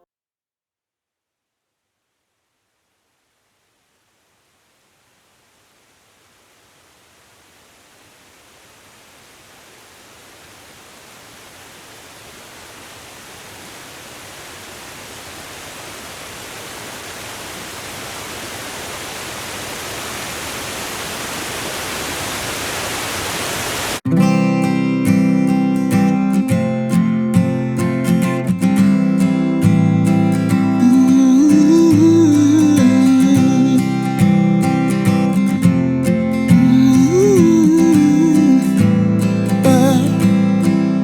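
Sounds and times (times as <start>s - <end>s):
waterfall rushing water: 5.6s - 24.0s, 36.4s - 38.9s
strummed acoustic guitar music: 24.1s - 41.0s.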